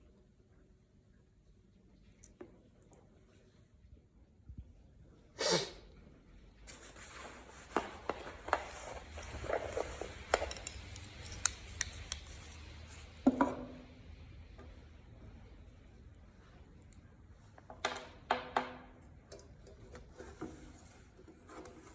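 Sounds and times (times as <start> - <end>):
rustling: 6.6 - 13.2
small clicks and knocks: 10.2 - 12.6.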